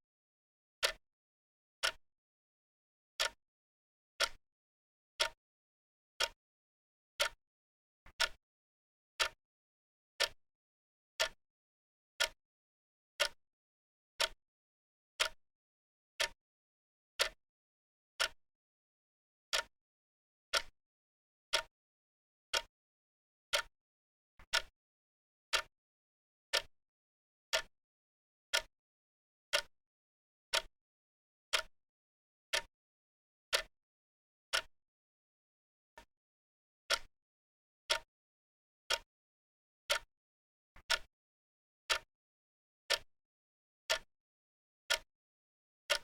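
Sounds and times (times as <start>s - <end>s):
clock ticking: 4.2s - 4.4s, 8.1s - 8.4s, 21.5s - 21.7s, 24.4s - 24.7s, 30.5s - 30.7s, 32.5s - 32.7s, 34.5s - 34.7s, 37.9s - 38.1s, 39.9s - 40.1s, 40.8s - 41.1s, 41.9s - 42.1s, 44.9s - 45.1s.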